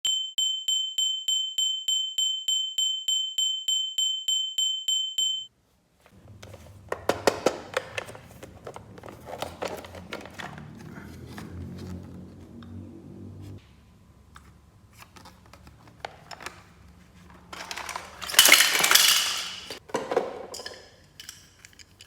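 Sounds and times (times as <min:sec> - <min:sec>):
high electronic ping: 0:00.0 - 0:05.5
plastic packaging rustling: 0:06.1 - 0:12.1, 0:14.9 - 0:19.8
toy pieces clicking: 0:17.6 - 0:19.8.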